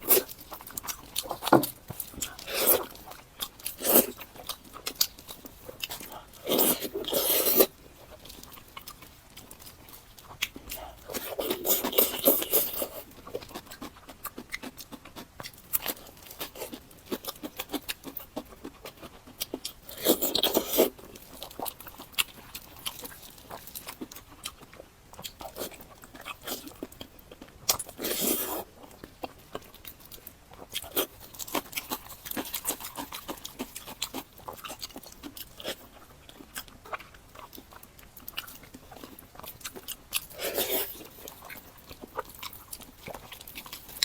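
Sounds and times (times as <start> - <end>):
chewing: 0.0 - 44.0.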